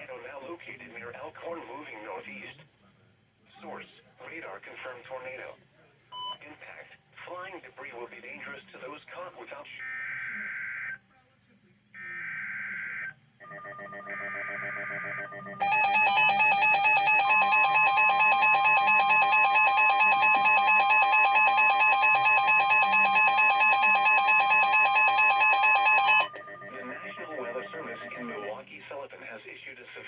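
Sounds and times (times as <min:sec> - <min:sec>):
loud steady alarm tone: 0:12.0 - 0:28.6.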